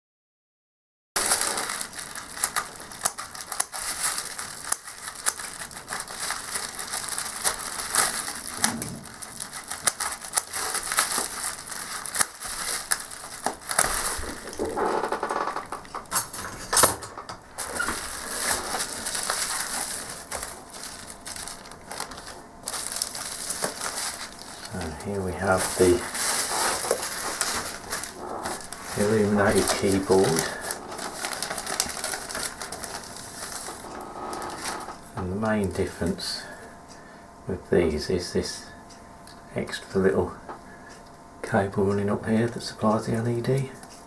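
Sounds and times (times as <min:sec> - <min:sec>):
plastic packaging crinkling: 0:01.2 - 0:16.4, 0:17.2 - 0:36.4.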